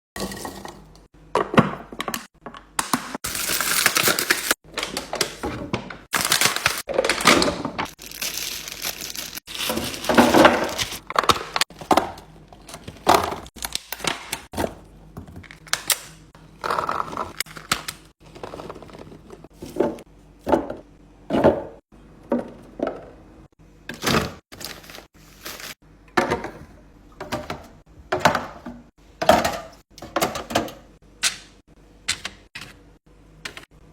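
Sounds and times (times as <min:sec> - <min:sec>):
containers thunking and clicking: 0:00.2 - 0:03.2, 0:04.0 - 0:08.0, 0:16.6 - 0:25.1, 0:26.0 - 0:31.4
packaging crinkling: 0:03.2 - 0:05.4, 0:06.1 - 0:11.6, 0:24.5 - 0:25.8.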